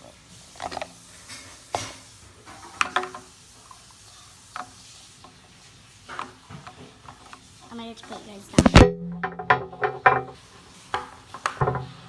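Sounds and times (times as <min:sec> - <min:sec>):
small hard objects knocking: 0:08.6 - 0:10.4.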